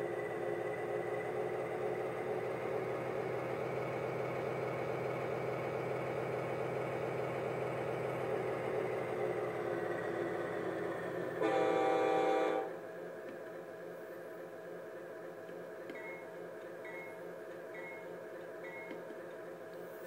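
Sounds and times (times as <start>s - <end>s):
diesel locomotive engine through speaker: 0.0s - 20.0s.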